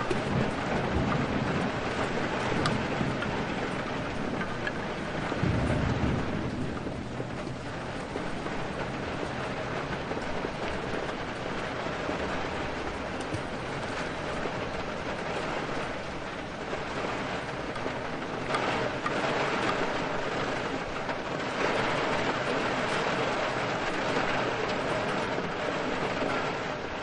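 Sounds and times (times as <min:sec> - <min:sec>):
rain with wind: 0:00.0 - 0:27.0.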